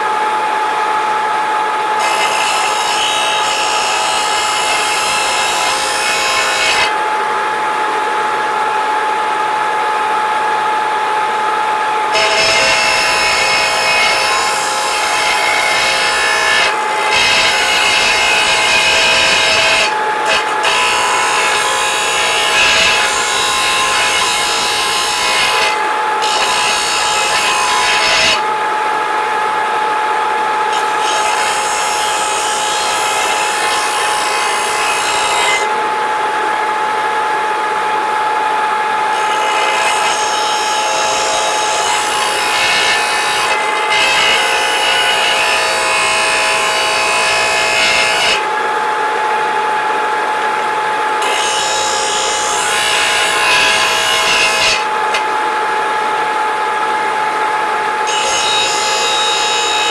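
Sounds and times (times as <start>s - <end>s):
steel bar grinding rasp: 2.0s - 6.9s, 12.2s - 28.4s, 30.8s - 35.7s, 39.2s - 48.4s, 51.2s - 55.2s.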